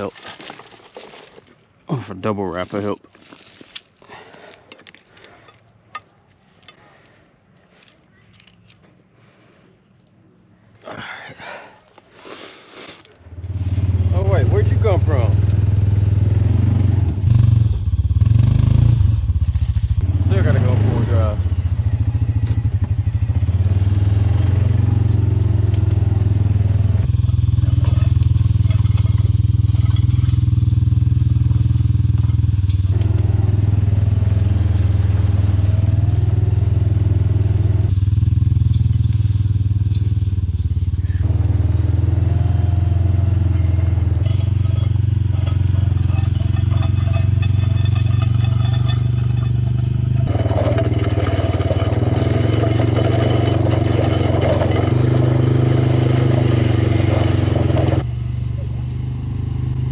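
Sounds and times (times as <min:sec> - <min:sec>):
log-skidding machine engine: 0:16.6 - 0:21.1, 0:27.0 - 0:33.4, 0:37.8 - 0:41.3, 0:44.2 - 0:59.9.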